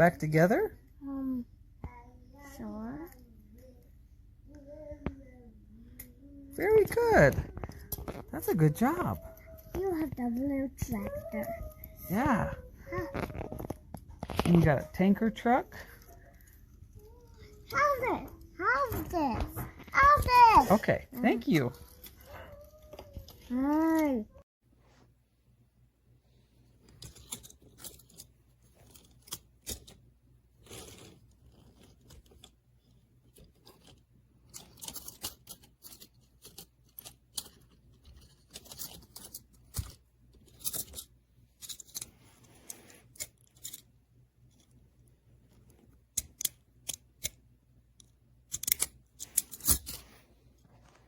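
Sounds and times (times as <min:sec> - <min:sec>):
metal toys clicking and rattling: 0:05.9 - 0:24.2, 0:26.8 - 0:44.8, 0:45.5 - 0:47.4, 0:48.0 - 0:50.1.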